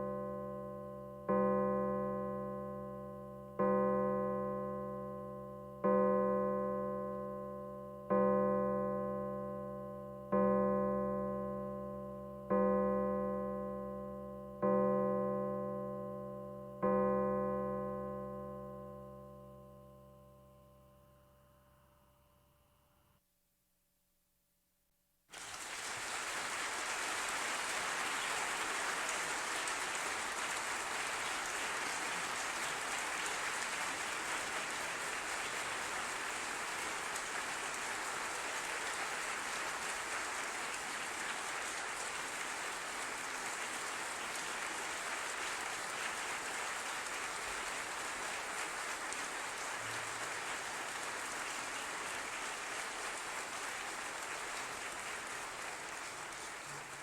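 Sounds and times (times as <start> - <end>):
crowd applauding: 25.3 - 57.0.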